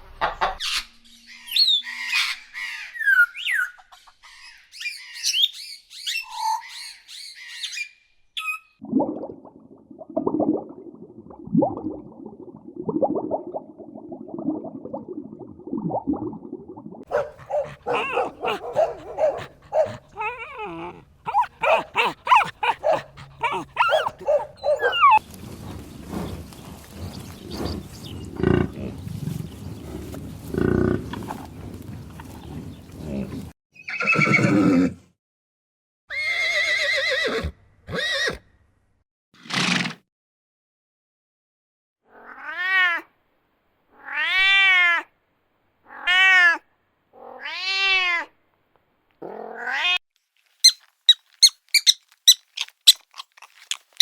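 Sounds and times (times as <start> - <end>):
farm animal calls: 17.1 - 34.8
horses whinnying: 17.5 - 35.0, 36.1 - 38.4.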